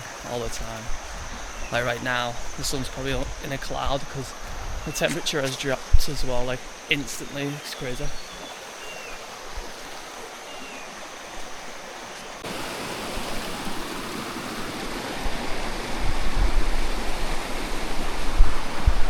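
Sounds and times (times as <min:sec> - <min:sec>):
rushing river water: 0:00.0 - 0:19.0.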